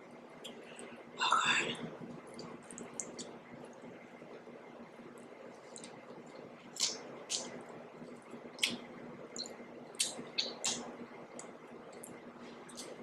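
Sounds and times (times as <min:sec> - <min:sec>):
wet mouth eating sounds: 0:05.2 - 0:13.0.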